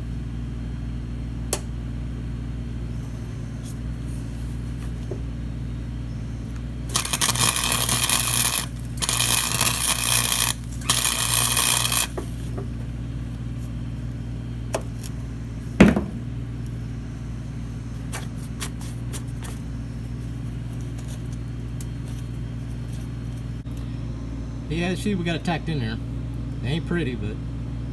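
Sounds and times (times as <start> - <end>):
low electrical hum: 0.0 - 27.9
welding arc crackle: 6.9 - 12.5.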